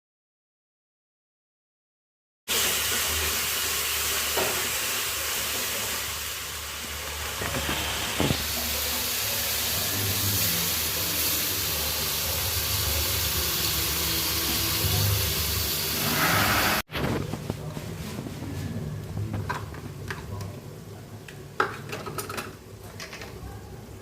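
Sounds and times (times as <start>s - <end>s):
chicken sizzling in a pan: 2.5s - 16.8s.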